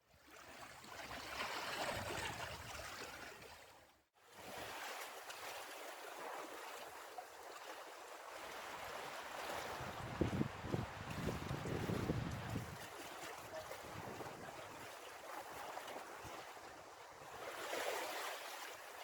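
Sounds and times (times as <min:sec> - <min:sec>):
sea water rushing: 0:04.4 - 0:19.0
wind buffeting microphone: 0:09.6 - 0:14.9.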